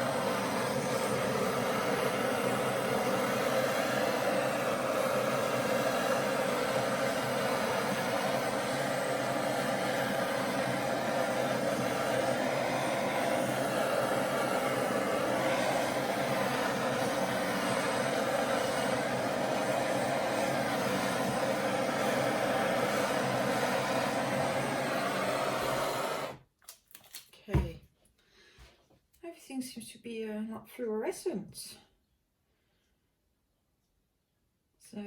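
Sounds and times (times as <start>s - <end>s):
gas torch hissing: 0.0s - 26.4s.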